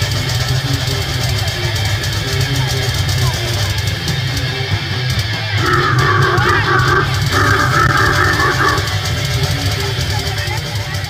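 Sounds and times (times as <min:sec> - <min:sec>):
death metal band playing: 0:02.9 - 0:10.1.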